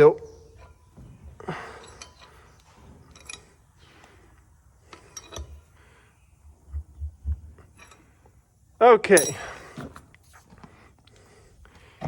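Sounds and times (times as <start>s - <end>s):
metallic clinks and taps: 1.8s - 4.2s, 4.9s - 5.6s, 7.6s - 8.2s.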